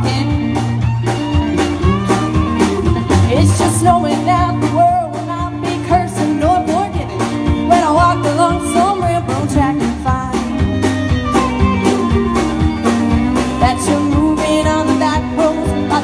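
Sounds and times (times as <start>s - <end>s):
woman singing: 0.0s - 0.8s, 2.9s - 10.7s, 13.4s - 16.0s
live band playing: 0.0s - 16.0s
steady drum beat: 0.0s - 16.0s.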